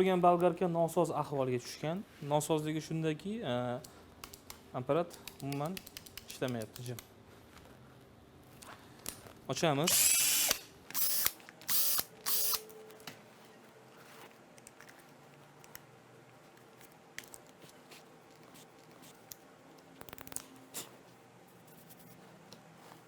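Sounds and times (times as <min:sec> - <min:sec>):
parts clicking and knocking: 0:04.2 - 0:07.1.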